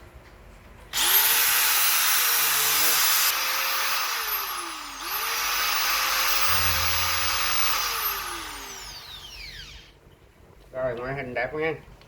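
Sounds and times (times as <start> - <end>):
electric drill motor whine: 1.0 - 10.0.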